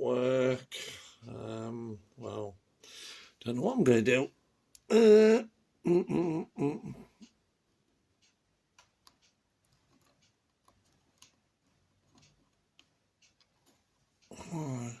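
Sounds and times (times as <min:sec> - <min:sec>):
faint small clicks: 0:08.2 - 0:14.3.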